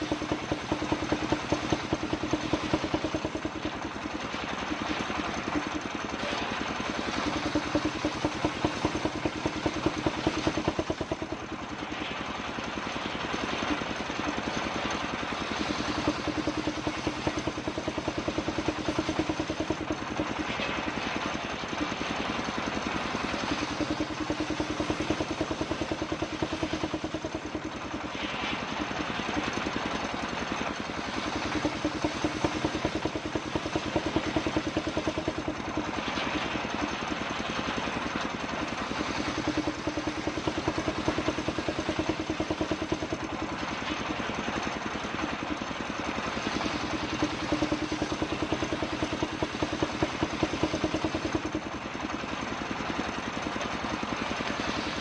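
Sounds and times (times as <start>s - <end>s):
circular saw pulsing drone: 0.0s - 38.0s, 38.6s - 43.2s.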